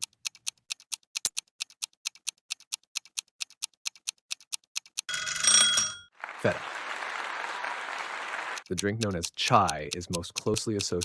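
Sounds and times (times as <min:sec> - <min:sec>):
clock ticking: 0:00.0 - 0:05.3, 0:08.6 - 0:11.0.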